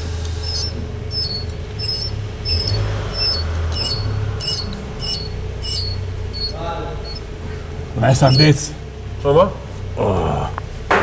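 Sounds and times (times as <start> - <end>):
brake squealing: 0.0 - 11.0.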